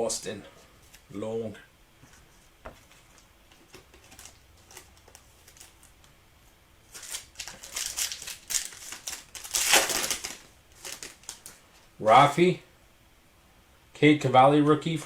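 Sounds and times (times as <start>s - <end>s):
card pack wrapper crinkling: 3.7s - 6.0s, 6.9s - 11.6s.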